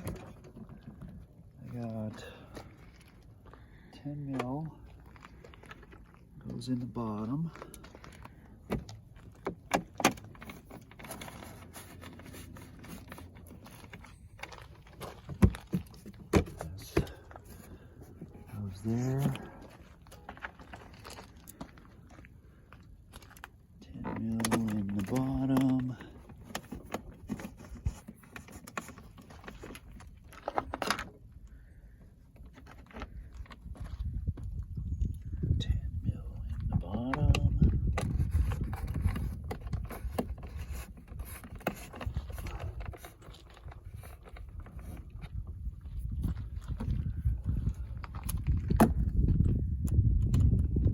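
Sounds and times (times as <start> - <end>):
bolts being handled: 7.2 - 22.1
hand tools clicking and scraping: 7.5 - 22.1.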